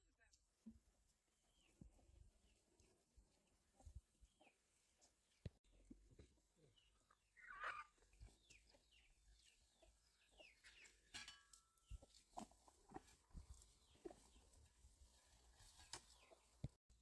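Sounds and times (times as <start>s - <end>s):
faint bird chirping: 1.4s - 12.2s.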